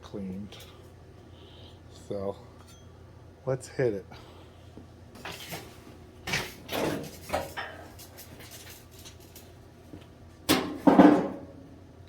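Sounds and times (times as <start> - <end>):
objects knocking and clattering: 10.5 - 11.5.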